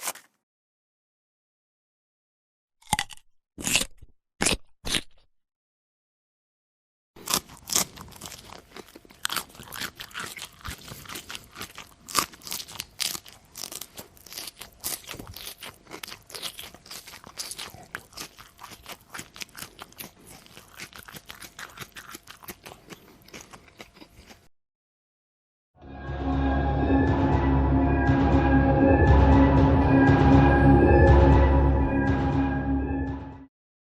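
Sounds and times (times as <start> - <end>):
chewing crunchy food: 2.8 - 5.2, 7.2 - 24.5.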